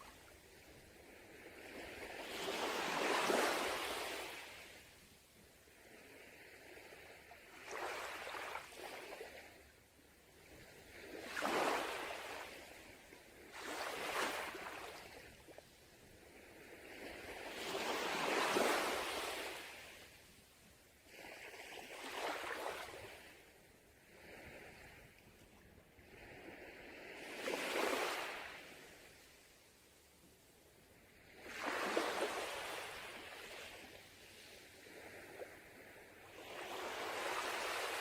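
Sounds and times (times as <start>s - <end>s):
sea waves breaking on beach: 1.1s - 4.9s, 10.7s - 15.4s, 16.3s - 20.2s, 26.0s - 29.2s, 31.1s - 38.0s.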